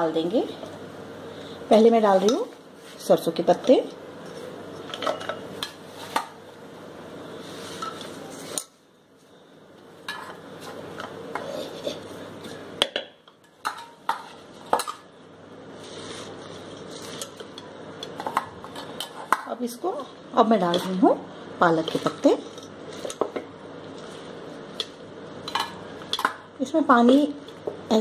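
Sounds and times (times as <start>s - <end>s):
leaves rustling: 15.8s - 17.3s.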